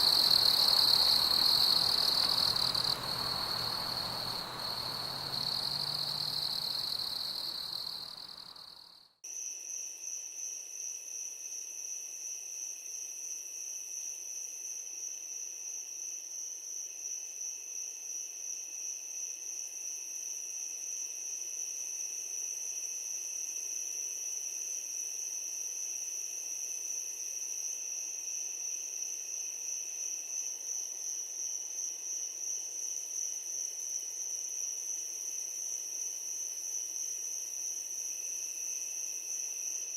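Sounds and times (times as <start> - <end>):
crickets trilling: 0.0 - 8.8
high continuous insect trill: 0.0 - 39.9.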